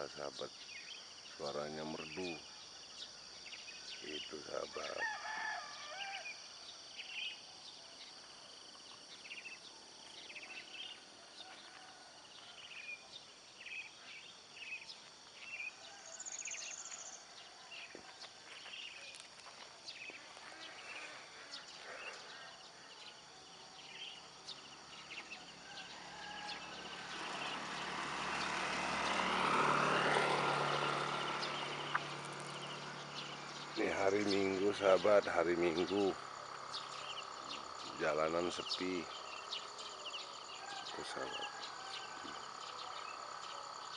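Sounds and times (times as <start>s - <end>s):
high insect drone: 0.0s - 43.9s
small birds chirping: 0.0s - 43.9s
passing vehicle: 24.5s - 43.9s.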